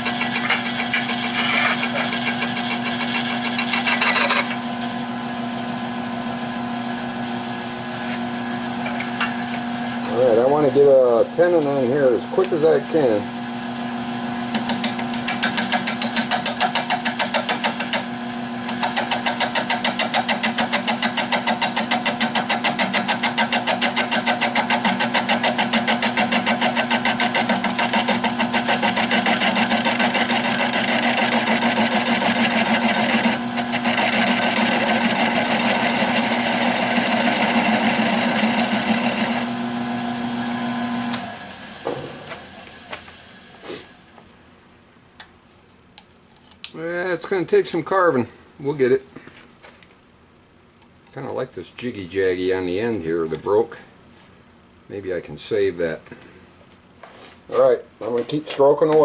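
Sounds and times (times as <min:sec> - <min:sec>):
gouge chattering on spinning wood: 0:00.0 - 0:04.7, 0:14.6 - 0:18.1, 0:18.7 - 0:39.5
wood lathe humming: 0:00.0 - 0:43.6.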